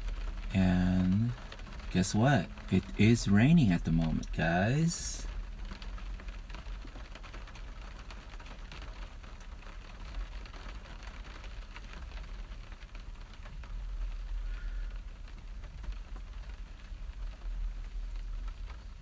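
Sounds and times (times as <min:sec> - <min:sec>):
steady low rumble: 0:00.0 - 0:08.0
rain pattering: 0:00.0 - 0:19.0.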